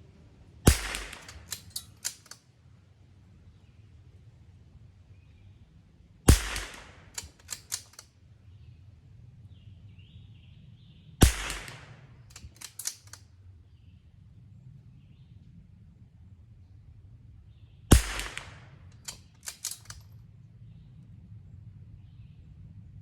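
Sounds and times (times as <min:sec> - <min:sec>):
quick sharp clicks: 0:00.7 - 0:02.4, 0:06.4 - 0:08.1, 0:11.2 - 0:13.2, 0:17.9 - 0:20.1
rifle shots: 0:00.7 - 0:02.4, 0:06.3 - 0:08.0, 0:11.2 - 0:13.2, 0:17.9 - 0:20.0.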